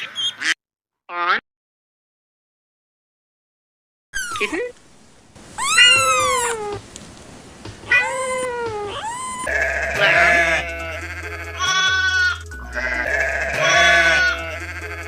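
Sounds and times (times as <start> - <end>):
kitten meowing: 4.2 - 4.6, 5.5 - 6.8, 7.9 - 11.0
bleating calls: 5.5 - 6.9, 7.8 - 15.0
background music with low beat: 6.8 - 15.0.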